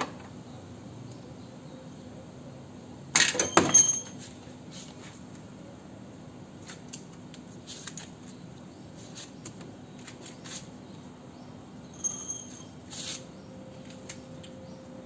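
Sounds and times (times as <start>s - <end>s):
bright metallic ring: 3.4s - 4.2s, 11.8s - 12.9s
small metal parts clinking: 11.9s - 12.9s.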